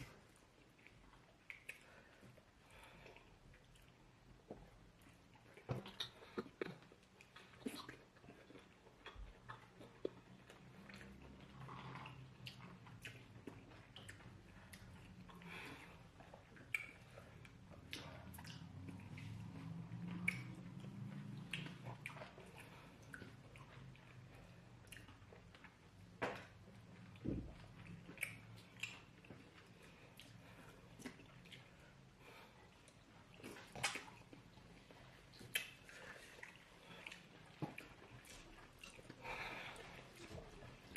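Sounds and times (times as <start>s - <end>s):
chewing and mouth smacks: 0.0s - 40.9s
wet mouth clicks and smacks: 0.8s - 2.3s, 16.4s - 23.8s, 24.8s - 30.4s, 32.9s - 34.5s, 35.3s - 39.2s.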